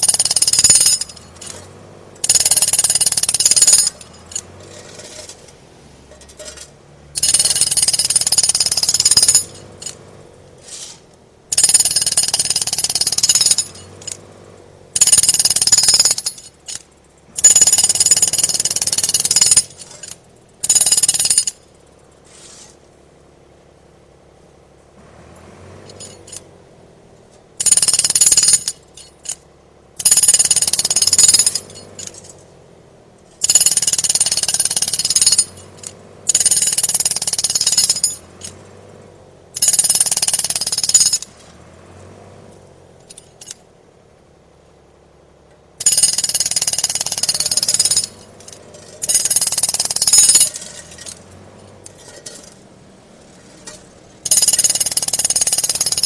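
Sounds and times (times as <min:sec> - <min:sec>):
jackhammer hammering: 0:00.0 - 0:05.4, 0:06.2 - 0:10.3, 0:11.5 - 0:14.4, 0:15.0 - 0:21.8, 0:27.6 - 0:29.4, 0:30.0 - 0:32.4, 0:33.4 - 0:38.8, 0:39.5 - 0:42.2, 0:45.8 - 0:56.0.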